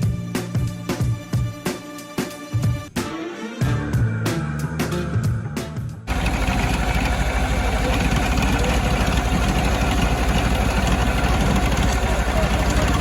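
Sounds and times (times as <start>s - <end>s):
music: 0.0s - 6.1s
engine running steadily: 6.1s - 13.0s.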